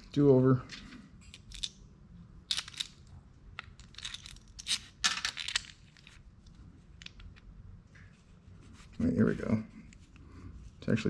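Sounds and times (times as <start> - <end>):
metal sockets clinking and rattling: 0.7 - 1.8, 2.4 - 6.2.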